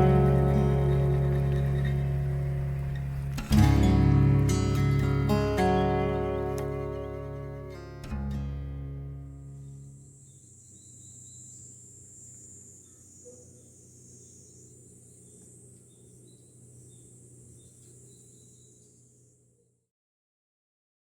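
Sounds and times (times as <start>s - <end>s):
insect chirps: 0.0s - 3.8s, 9.0s - 19.8s
insects trilling: 0.0s - 3.8s, 9.1s - 19.8s.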